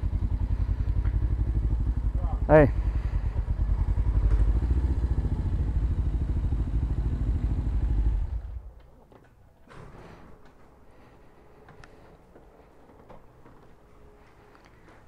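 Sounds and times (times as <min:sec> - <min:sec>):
motorcycle engine running: 0:00.0 - 0:08.7.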